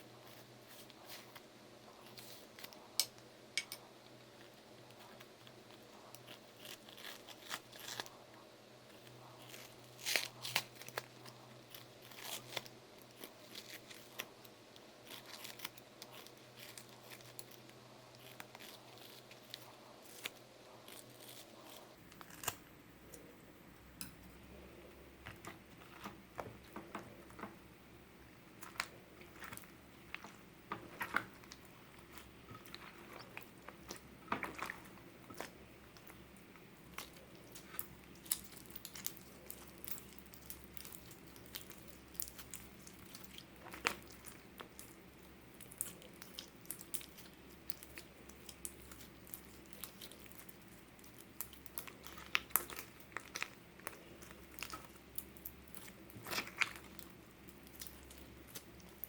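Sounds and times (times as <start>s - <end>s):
slime being squished by hand: 28.6s - 59.0s.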